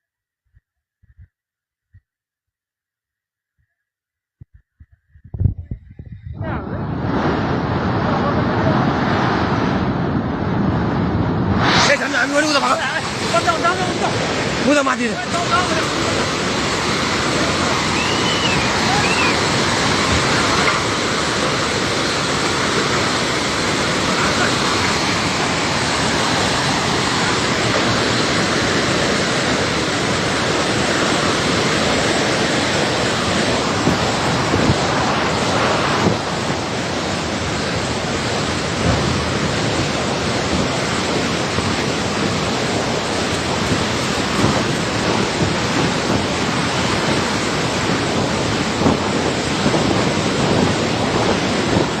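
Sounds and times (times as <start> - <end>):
river rushing: 6.8 - 52.0.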